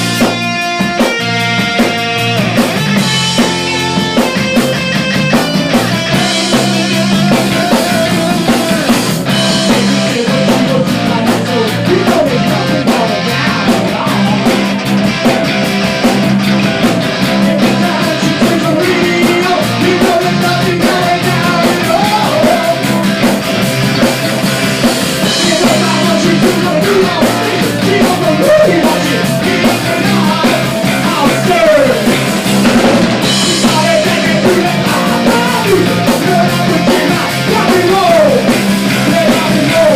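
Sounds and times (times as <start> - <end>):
punk rock band music: 0.0 - 39.9
person singing: 5.8 - 14.8, 17.1 - 23.4, 25.2 - 32.3, 33.4 - 39.9.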